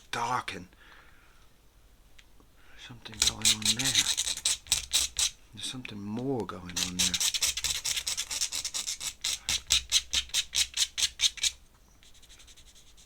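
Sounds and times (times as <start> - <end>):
fingertips rubbing paper: 3.2 - 5.3, 6.7 - 13.0.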